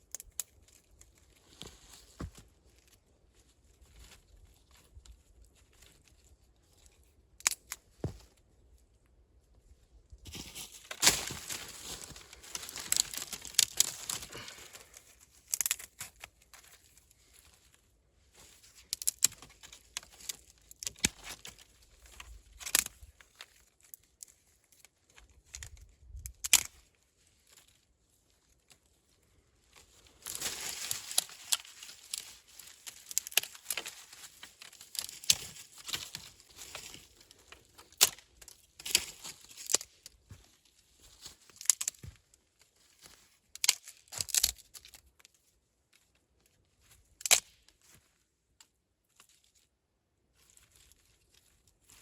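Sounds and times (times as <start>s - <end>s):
dry branches rustling and crackling: 0.1s - 9.0s, 9.6s - 48.2s, 50.3s - 52.0s
branches snapping: 10.3s - 16.6s, 18.8s - 23.0s, 25.6s - 26.7s, 30.2s - 40.4s, 41.4s - 42.2s, 43.5s - 45.0s, 47.2s - 47.7s.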